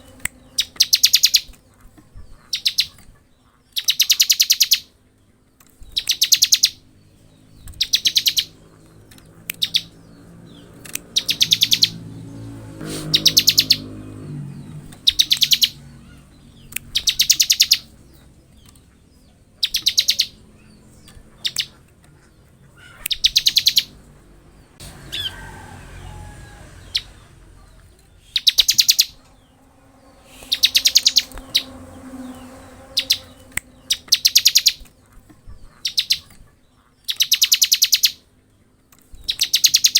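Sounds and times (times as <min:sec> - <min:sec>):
bird singing fast high trills: 0:00.0 - 0:01.5, 0:07.4 - 0:08.7, 0:09.5 - 0:18.1, 0:19.6 - 0:20.8, 0:22.8 - 0:24.0, 0:28.1 - 0:34.9.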